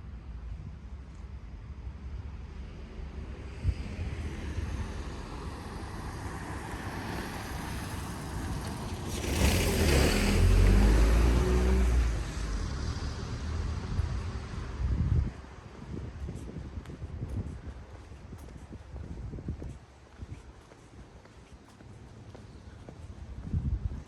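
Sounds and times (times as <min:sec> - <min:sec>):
vehicle passing by: 0:03.4 - 0:16.0.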